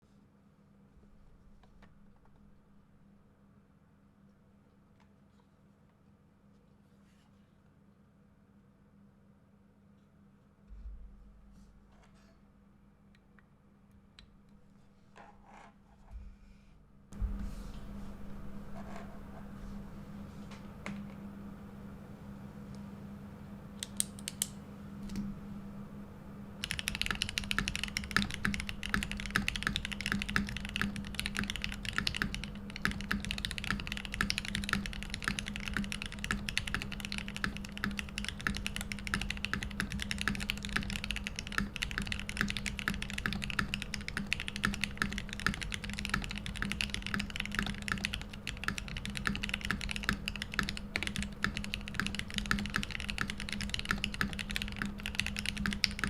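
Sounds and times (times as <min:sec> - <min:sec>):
steady low hum: 0:16.0 - 0:56.0
mechanical keyboard typing: 0:26.6 - 0:56.0.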